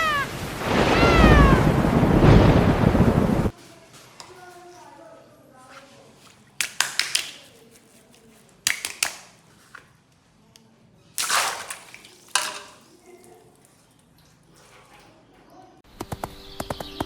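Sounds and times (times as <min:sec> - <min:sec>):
water rushing splash: 0:00.0 - 0:03.5, 0:11.2 - 0:13.0
plastic cracking: 0:05.7 - 0:10.2, 0:11.2 - 0:14.2.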